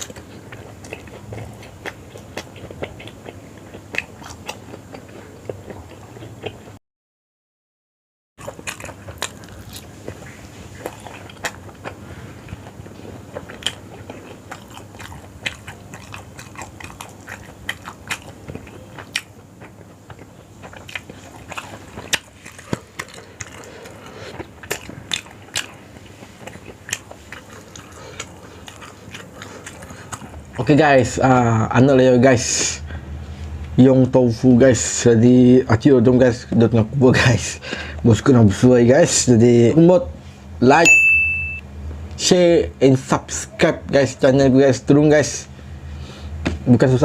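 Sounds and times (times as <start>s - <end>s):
chewing and biting food: 0.0s - 6.8s, 8.4s - 31.7s.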